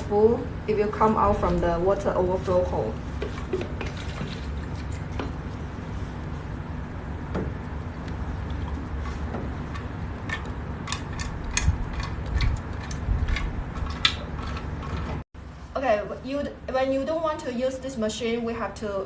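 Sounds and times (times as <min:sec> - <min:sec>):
water filling low rumble: 0:00.0 - 0:15.0.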